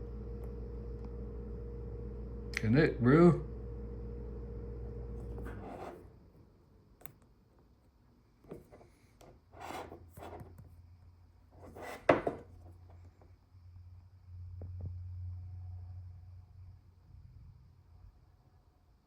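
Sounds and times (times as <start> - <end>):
brushing rubs on hard surface: 5.4 - 6.1, 9.6 - 10.5, 11.6 - 12.3.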